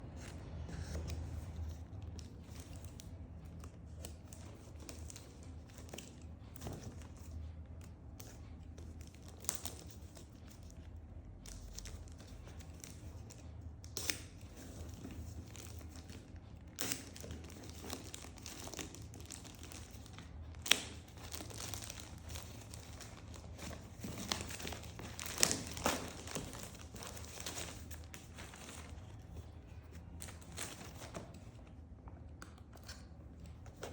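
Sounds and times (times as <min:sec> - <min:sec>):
low steady hum: 0:00.0 - 0:33.9
packaging crinkling and tearing: 0:09.0 - 0:10.8, 0:11.5 - 0:31.5.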